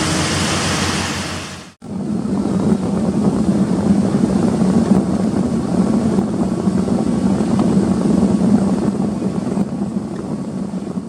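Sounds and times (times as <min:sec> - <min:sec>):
diesel engine droning under load: 0:00.0 - 0:04.0.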